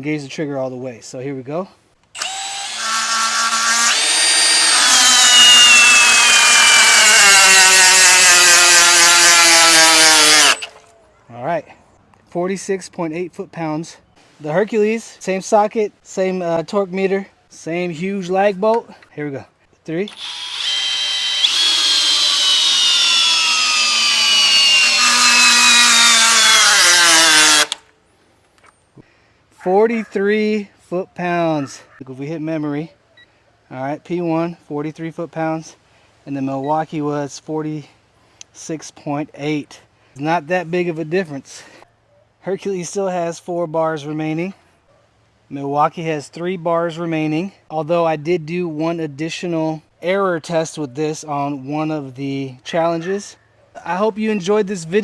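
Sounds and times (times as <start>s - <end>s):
hammer drill motor whining: 2.2s - 10.7s, 20.1s - 27.8s.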